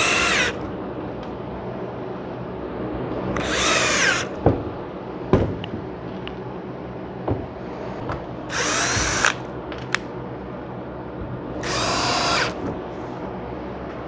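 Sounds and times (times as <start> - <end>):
power drill running: 0.0 - 0.7, 3.4 - 4.4, 8.5 - 9.4, 11.6 - 12.6.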